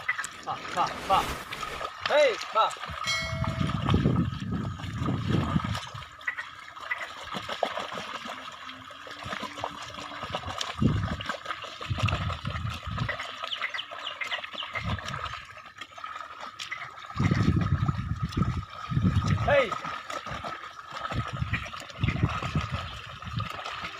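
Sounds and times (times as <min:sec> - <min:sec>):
water and mud splashing: 0:00.0 - 0:23.9.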